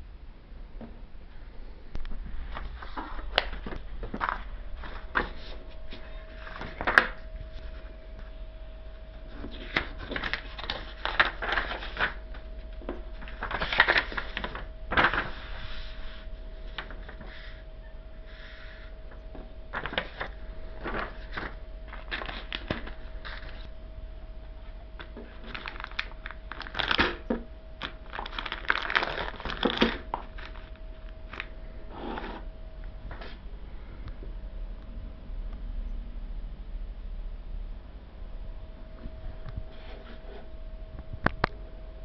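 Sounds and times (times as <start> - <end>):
faint steady hum: 0.0 - 42.0
packaging rustling: 2.2 - 7.9, 9.2 - 17.6, 19.7 - 23.8, 25.0 - 31.6.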